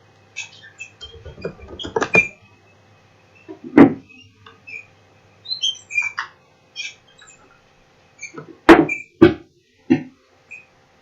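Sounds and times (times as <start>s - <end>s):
birds chirping: 0.3s - 7.5s.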